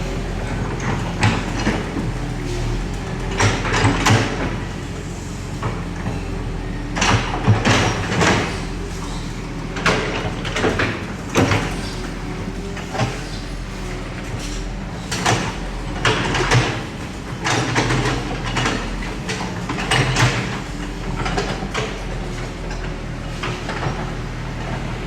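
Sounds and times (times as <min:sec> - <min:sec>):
bulldozer diesel engine running: 0:00.0 - 0:25.0.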